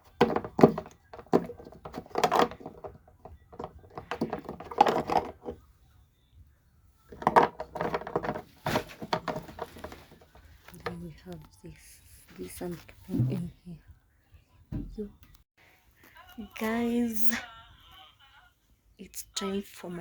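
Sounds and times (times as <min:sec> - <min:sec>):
water jars knocking and clattering: 0:00.0 - 0:05.6, 0:07.1 - 0:11.0.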